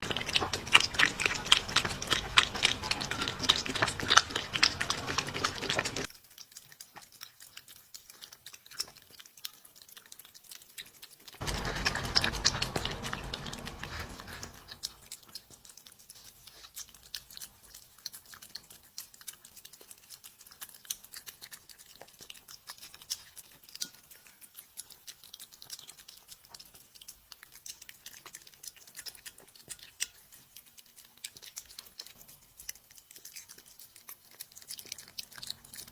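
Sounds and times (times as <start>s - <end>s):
dog crunching food: 0.0s - 35.9s.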